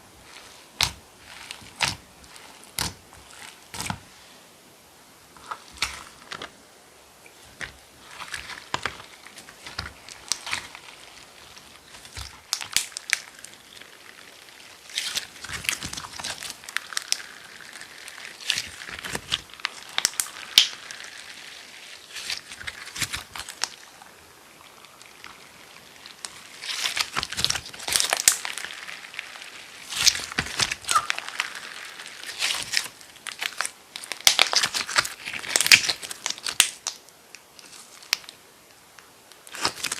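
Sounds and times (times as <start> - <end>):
slime squished crackling clicks: 2.6 - 3.0, 8.3 - 21.4, 26.1 - 37.0.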